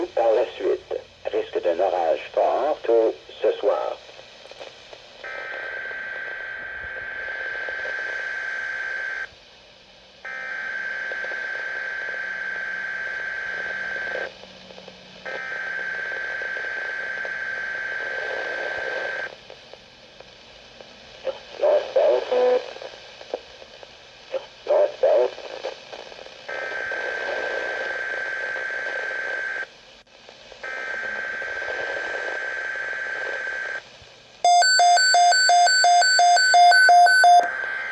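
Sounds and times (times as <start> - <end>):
high steady radio tone: 0.0 - 4.1, 34.5 - 37.9
static crackles: 0.0 - 9.2
radio static hiss: 0.0 - 9.3, 10.4 - 34.8, 35.7 - 37.9.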